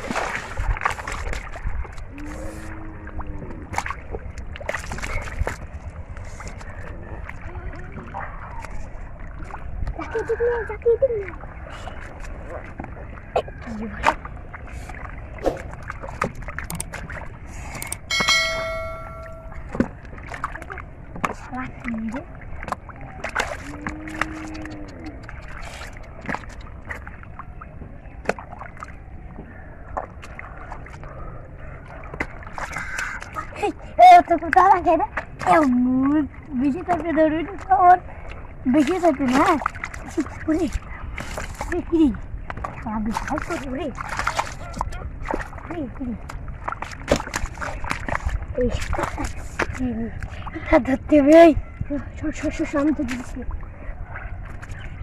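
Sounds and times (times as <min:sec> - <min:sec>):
water splashing and sloshing: 0:00.0 - 0:55.0.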